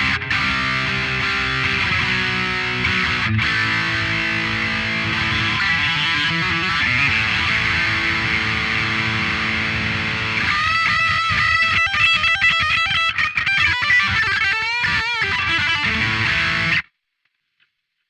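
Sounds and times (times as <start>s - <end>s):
electric guitar playing: 0.0s - 16.9s.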